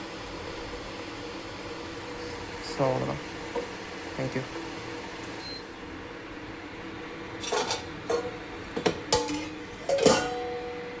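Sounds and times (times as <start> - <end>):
steady background hum: 0.0 - 11.0
metal pot clinking and clattering: 7.4 - 10.6.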